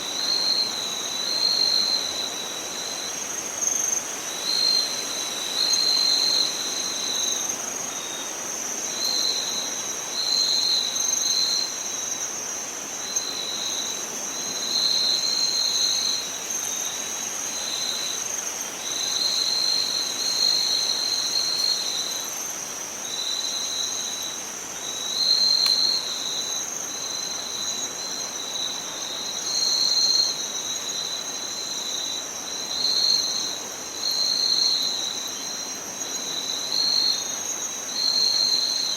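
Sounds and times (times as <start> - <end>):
high insect trill: 0.0 - 38.9
lower insect trill: 0.0 - 38.9.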